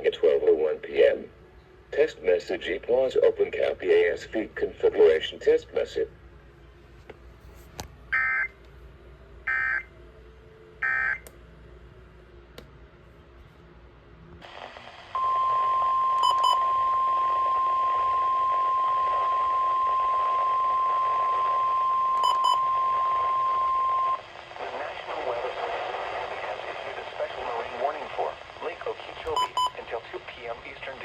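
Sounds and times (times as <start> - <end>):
radio receiver hiss: 14.4 - 31.0
steady weather radio alert tone: 14.4 - 31.0.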